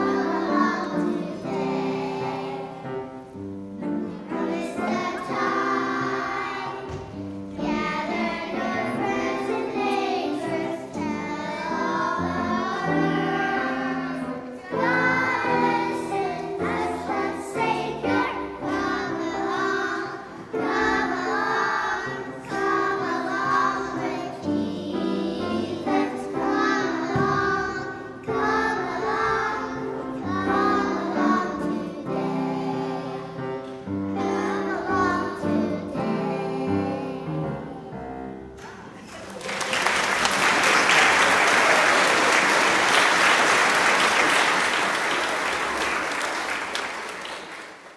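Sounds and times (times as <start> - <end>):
choir singing: 0.0 - 38.0.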